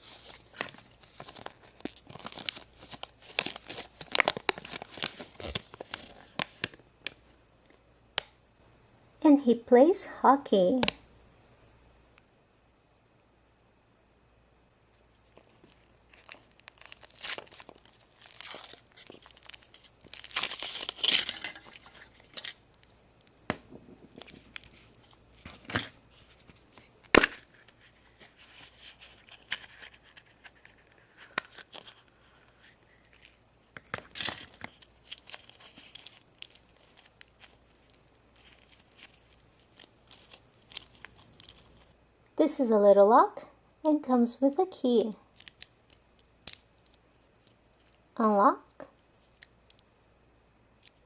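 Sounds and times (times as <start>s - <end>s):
foil wrapper crinkling: 0.0s - 7.2s, 15.3s - 42.0s.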